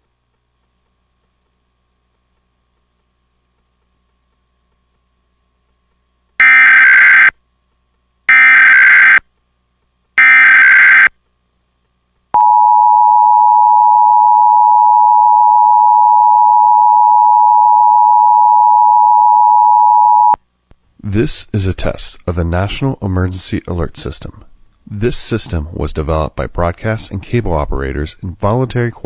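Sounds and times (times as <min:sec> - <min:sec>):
data tone bursts: 0:12.4 - 0:20.4
two-tone attention signal: 0:12.4 - 0:20.4.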